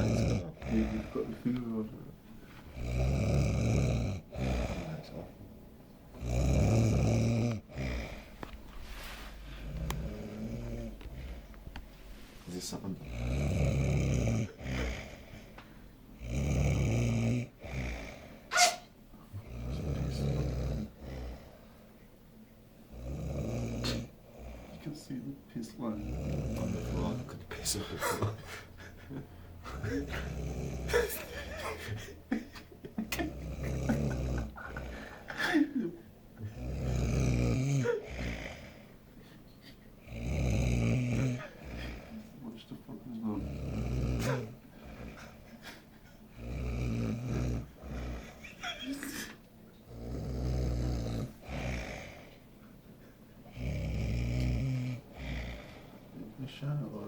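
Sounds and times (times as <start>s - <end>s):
man snoring: 0.0s - 1.8s, 2.7s - 5.3s, 6.2s - 8.5s, 9.6s - 11.4s, 12.8s - 15.4s, 16.2s - 18.4s, 19.4s - 21.6s, 22.9s - 24.9s, 25.8s - 27.9s, 29.7s - 31.2s, 33.3s - 35.6s, 36.4s - 38.9s, 40.0s - 42.2s, 43.2s - 45.4s, 46.3s - 48.6s, 49.9s - 52.3s, 53.5s - 56.0s.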